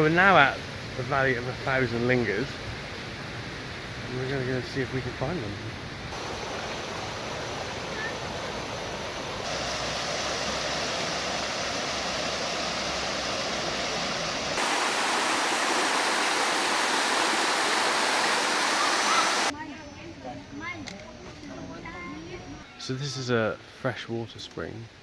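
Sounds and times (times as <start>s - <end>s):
river water rushing over rocks: 6.2s - 19.5s.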